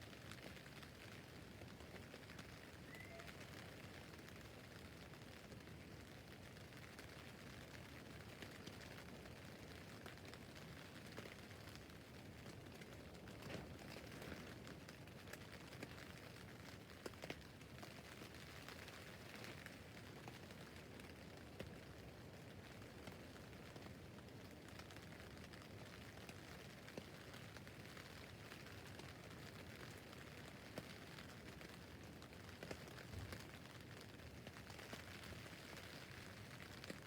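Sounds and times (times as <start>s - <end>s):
rain hissing on tent: 0.0s - 37.0s.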